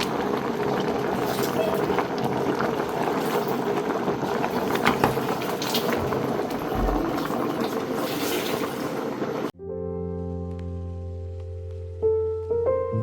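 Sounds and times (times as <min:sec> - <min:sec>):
food boiling in a pot: 0:00.0 - 0:09.5
small crackles: 0:00.0 - 0:09.5.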